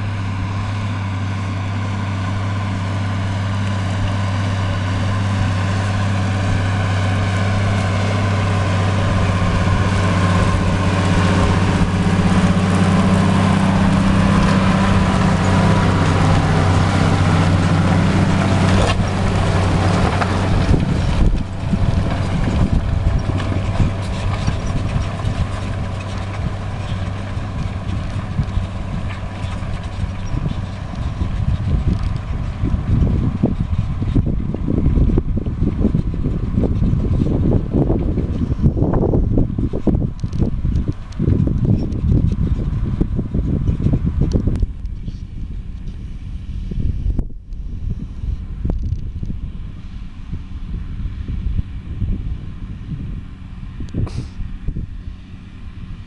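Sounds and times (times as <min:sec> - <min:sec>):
tractor diesel engine under load: 0:00.0 - 0:56.0.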